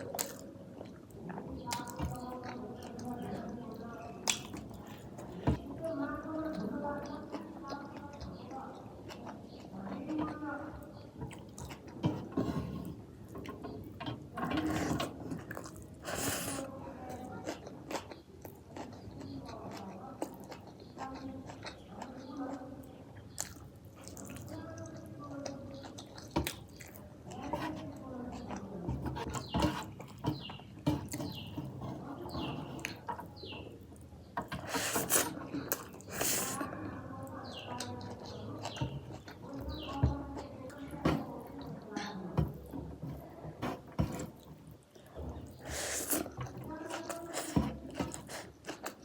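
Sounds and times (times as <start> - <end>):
person chewing: 14.8 - 16.6, 17.5 - 21.8, 23.3 - 24.5, 44.4 - 49.0.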